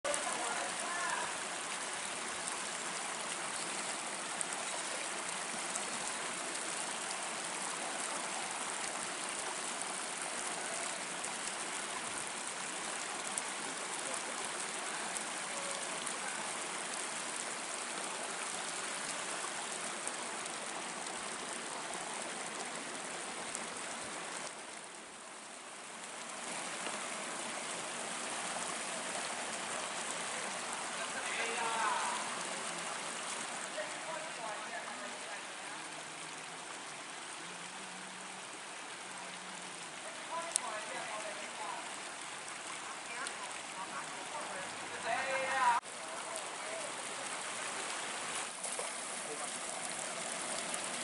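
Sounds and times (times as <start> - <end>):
water rushing: 0.0 - 51.0.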